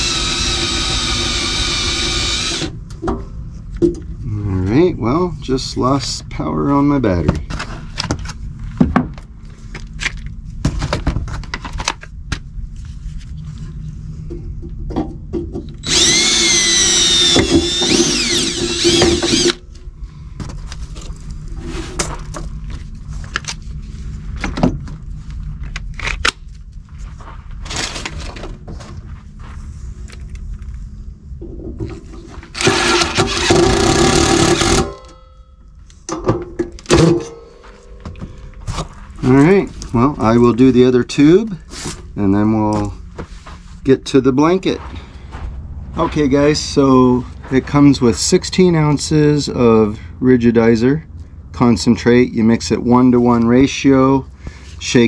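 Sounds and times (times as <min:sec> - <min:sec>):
drill boring into metal: 0:00.0 - 0:02.7, 0:15.8 - 0:19.6, 0:32.6 - 0:35.0.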